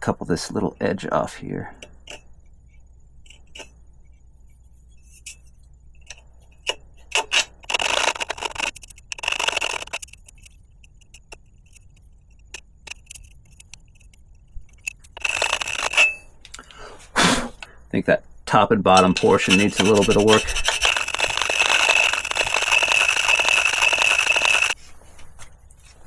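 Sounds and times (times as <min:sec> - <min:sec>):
hand file scraping metal: 0:03.3 - 0:11.4, 0:14.7 - 0:16.3, 0:18.9 - 0:24.9
light clicks and taps: 0:09.9 - 0:15.2.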